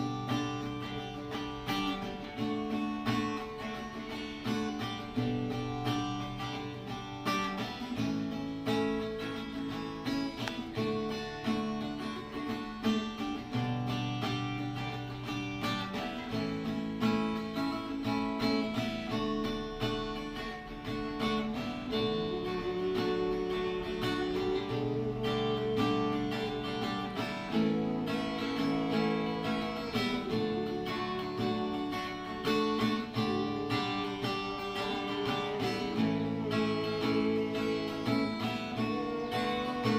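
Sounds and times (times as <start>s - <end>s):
acoustic guitar strumming: 0.0s - 39.9s
person humming melody: 19.0s - 39.9s.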